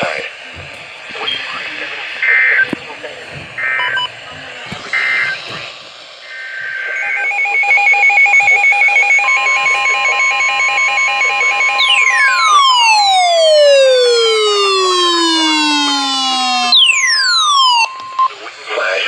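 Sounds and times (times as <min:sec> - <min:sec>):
steady alarm tone: 0:04.8 - 0:18.4
falling siren tone: 0:06.2 - 0:18.3
pulsing two-pitch beeping: 0:06.3 - 0:18.3.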